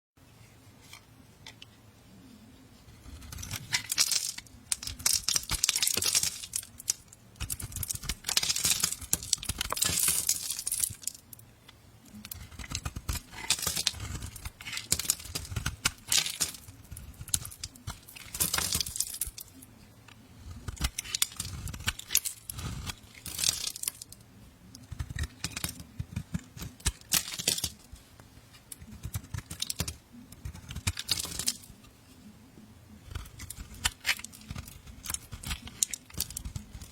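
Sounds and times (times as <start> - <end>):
knife scraping soap: 2.9 - 11.0, 12.2 - 19.4, 20.4 - 24.0, 24.8 - 27.8, 28.8 - 31.9, 33.0 - 36.9.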